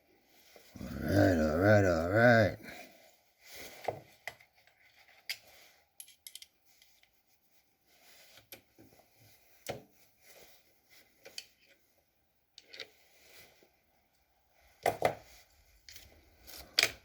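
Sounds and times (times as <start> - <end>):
tools and metal parts clicking: 6.0 - 6.6.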